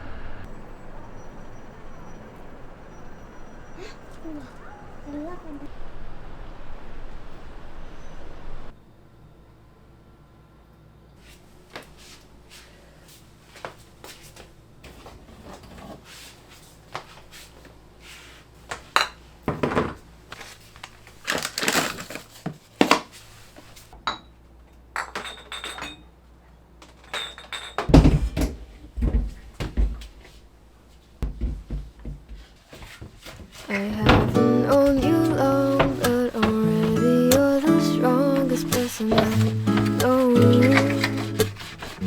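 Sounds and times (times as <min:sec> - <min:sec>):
containers and dishes clinking: 0:25.0 - 0:26.1, 0:26.9 - 0:28.6, 0:33.7 - 0:42.0
loud clunks and thuds: 0:27.9 - 0:30.2, 0:31.2 - 0:32.5, 0:33.9 - 0:37.6.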